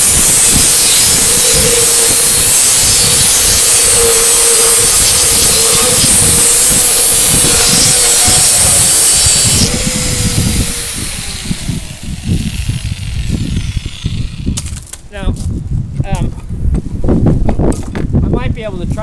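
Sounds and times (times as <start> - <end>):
angle grinder cutting stone: 0.0 - 15.0
motor winding down: 0.0 - 15.0
gusty wind rumble on microphone: 0.0 - 19.0.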